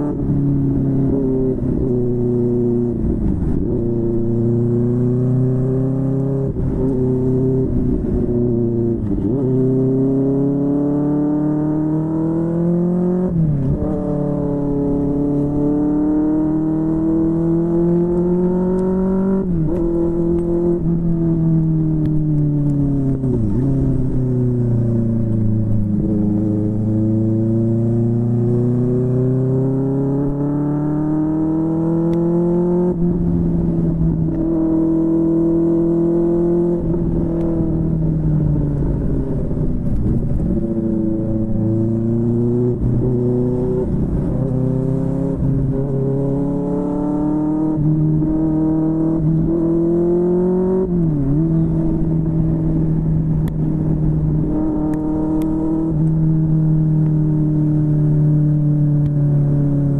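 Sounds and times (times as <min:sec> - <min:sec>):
motorcycle engine revving: 0:00.0 - 0:59.9.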